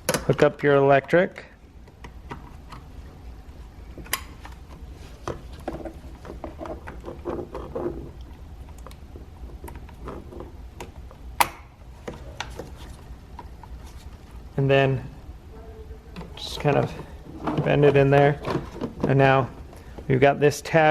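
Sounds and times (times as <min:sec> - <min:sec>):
scraping and rubbing: 0:12.2 - 0:14.4.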